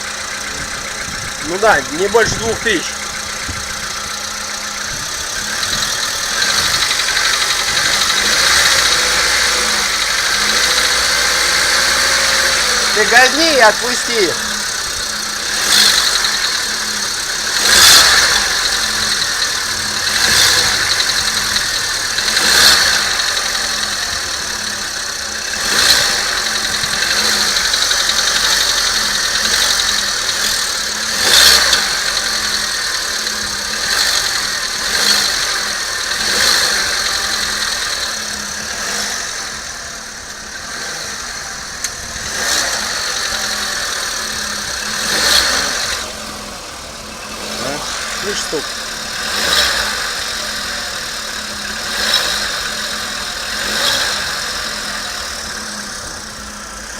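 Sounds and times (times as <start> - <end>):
car engine revving: 0.0 - 56.9.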